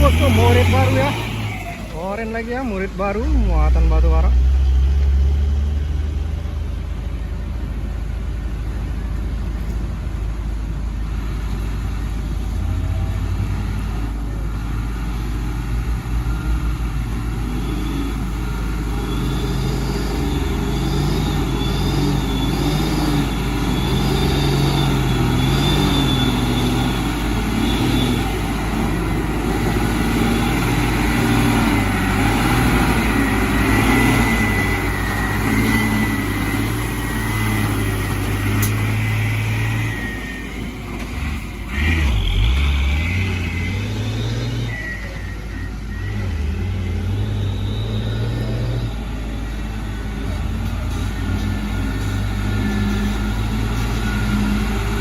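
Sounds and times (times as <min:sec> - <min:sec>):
heavy diesel truck engine: 0:00.0 - 0:55.0
thin high squeal: 0:33.2 - 0:48.4.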